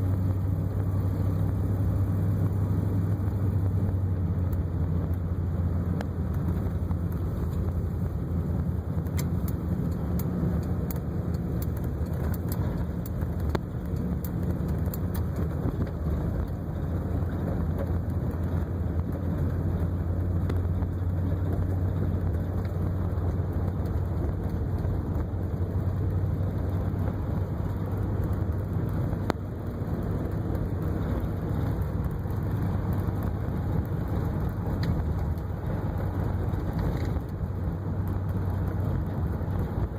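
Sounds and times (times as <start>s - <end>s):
car engine humming: 0.0s - 39.9s.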